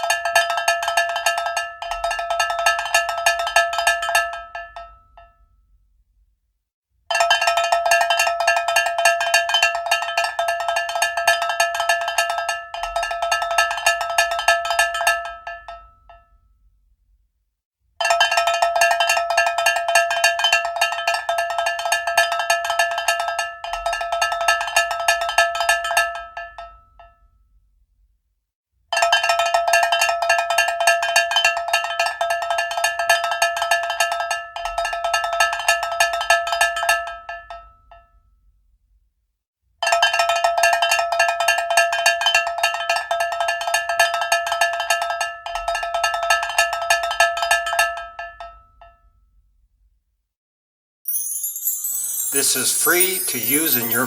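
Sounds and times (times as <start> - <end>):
cowbell struck rapidly: 51.1 - 54.0.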